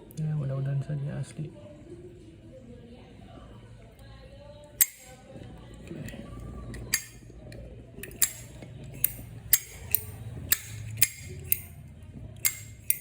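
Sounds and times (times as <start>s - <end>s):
lighter metallic clicks: 4.8s - 5.2s, 6.0s - 11.8s, 12.4s - 13.0s.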